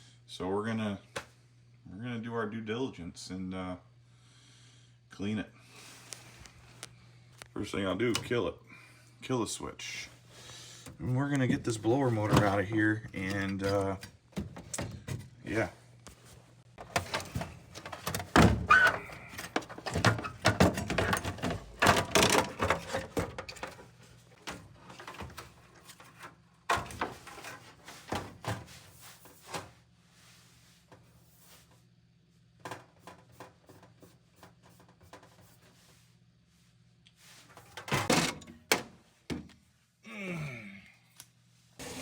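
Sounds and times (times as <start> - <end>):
metal clanking and scraping: 16.8 - 23.9.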